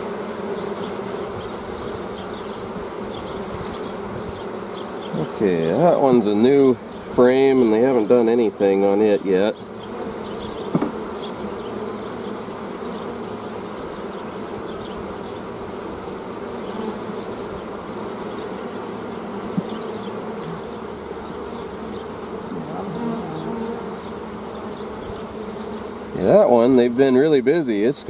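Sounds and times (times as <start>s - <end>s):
honeybees buzzing: 0.0s - 28.0s
brief knocks: 10.7s - 11.0s.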